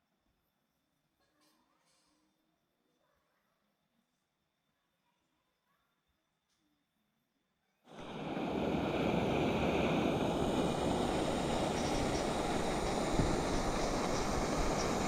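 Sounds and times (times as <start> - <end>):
running water with low rumble: 7.9 - 15.0.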